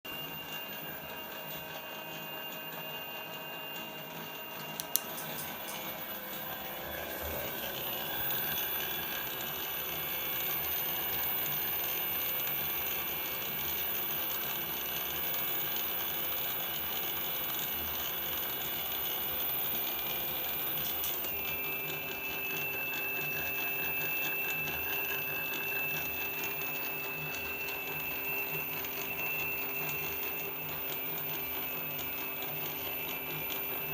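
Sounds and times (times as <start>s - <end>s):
electric motor whine: 0.0s - 33.9s
sharp clicks: 4.8s - 5.8s.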